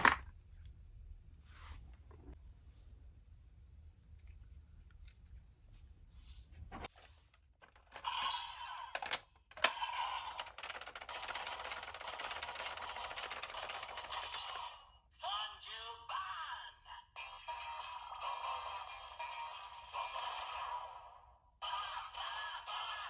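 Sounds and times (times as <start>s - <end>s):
plastic clicks: 0.0s - 0.3s, 7.6s - 8.2s, 8.9s - 9.8s, 10.4s - 14.6s
toy electronic ratcheting clatter: 7.8s - 14.8s.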